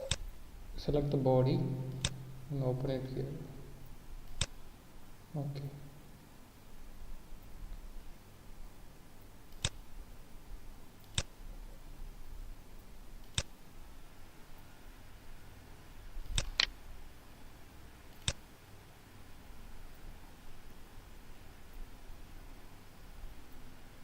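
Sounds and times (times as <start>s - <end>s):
computer mouse clicking: 0.0s - 0.3s, 1.9s - 2.2s, 4.2s - 4.6s, 9.5s - 9.8s, 11.0s - 11.4s, 13.2s - 13.5s, 16.2s - 16.7s, 18.1s - 18.4s
faint room hiss: 0.0s - 24.0s.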